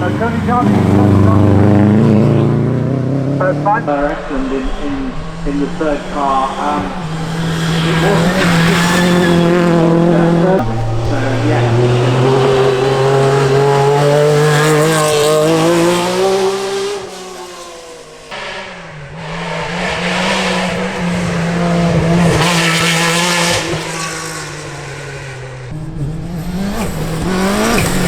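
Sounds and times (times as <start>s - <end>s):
rally car engines revving: 0.0s - 28.0s.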